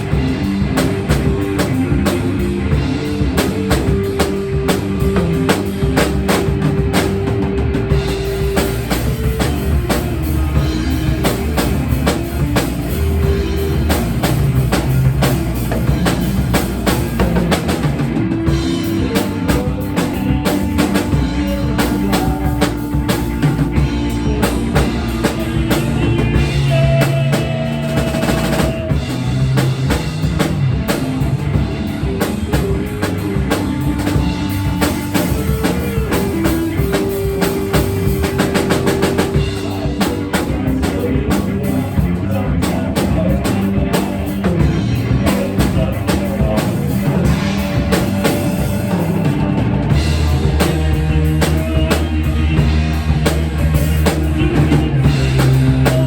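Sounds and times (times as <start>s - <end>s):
band playing: 0.0s - 56.0s
drum kit beat: 0.0s - 56.0s.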